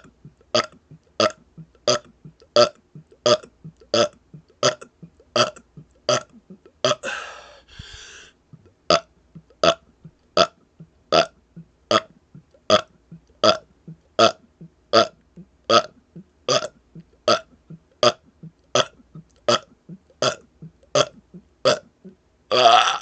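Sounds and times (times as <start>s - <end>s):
man burping: 0.0s - 8.0s, 14.2s - 18.2s, 18.8s - 23.0s.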